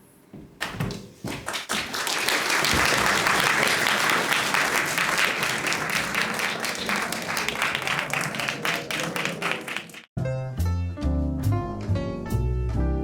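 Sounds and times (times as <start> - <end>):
audience applauding: 1.3 - 10.1.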